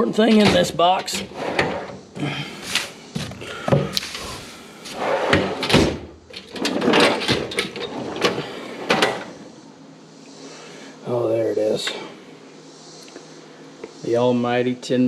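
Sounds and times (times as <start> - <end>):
metal drawers sliding open and shut: 0.2 - 2.0, 2.6 - 9.4
loose tools clattering: 5.4 - 9.3.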